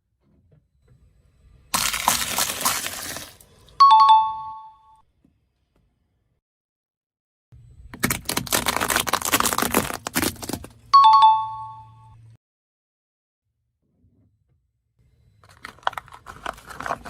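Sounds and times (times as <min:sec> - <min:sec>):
crackling crunch: 0:01.8 - 0:03.4, 0:08.0 - 0:10.7.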